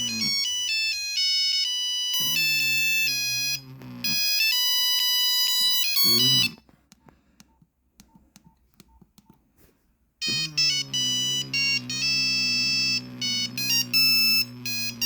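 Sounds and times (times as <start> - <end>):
monophonic phone ringtone: 0.0 - 6.7, 10.2 - 15.0.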